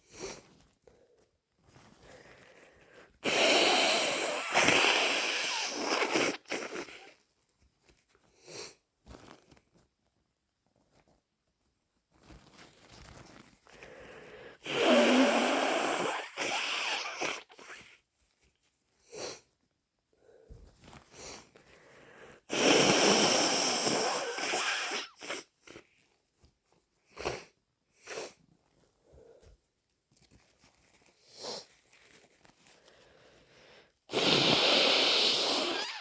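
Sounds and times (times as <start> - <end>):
person blowing nose: 0.0 - 0.4, 3.0 - 7.2, 13.8 - 18.0, 19.0 - 19.5, 21.1 - 25.9, 27.1 - 28.4, 31.3 - 31.7, 32.8 - 36.0
person sniffing: 2.0 - 7.2, 13.8 - 17.9, 19.0 - 19.5, 21.1 - 25.9, 27.1 - 28.4, 32.8 - 36.0
person sneezing: 3.2 - 7.1, 14.6 - 17.8, 22.5 - 25.5, 34.1 - 36.0.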